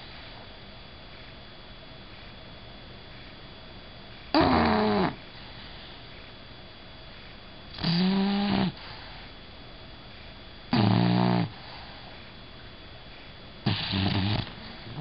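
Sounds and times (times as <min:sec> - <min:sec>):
dog snoring: 0:04.3 - 0:06.0, 0:07.7 - 0:09.3, 0:10.7 - 0:12.2, 0:13.6 - 0:15.0.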